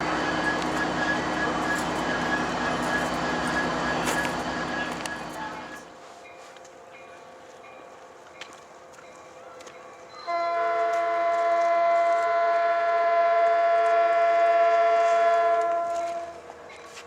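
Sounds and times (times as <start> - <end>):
locomotive air horn: 10.3 - 16.4.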